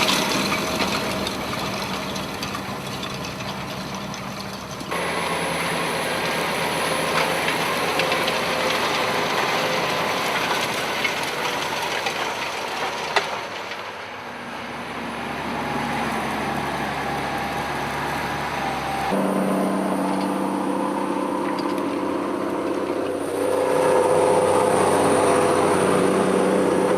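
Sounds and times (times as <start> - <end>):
tractor engine rumbling: 0.0 - 26.9.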